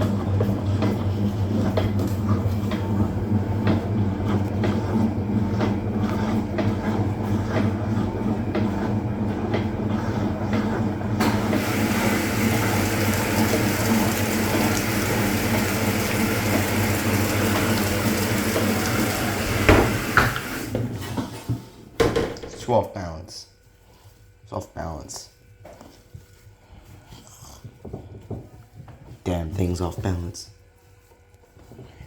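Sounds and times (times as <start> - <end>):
washing machine knocking: 0.0 - 22.8
washing machine motor hum: 0.0 - 25.2.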